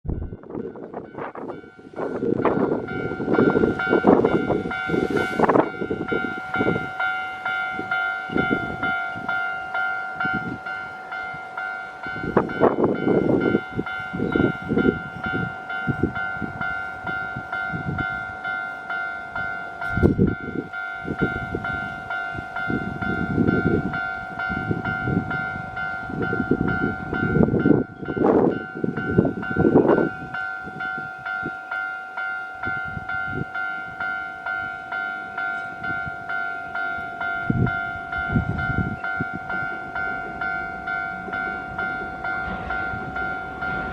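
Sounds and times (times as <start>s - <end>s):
level crossing alarm bell ringing: 0.3s - 43.9s
train wheels knocking over rail joints: 38.8s - 43.9s.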